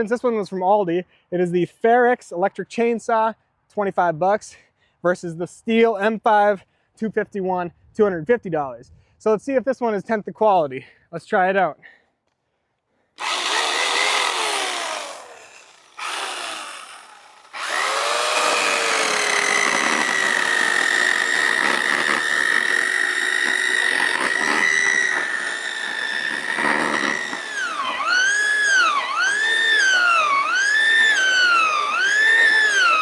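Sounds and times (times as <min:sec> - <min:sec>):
electric chainsaw cutting wood: 0:13.2 - 0:33.0.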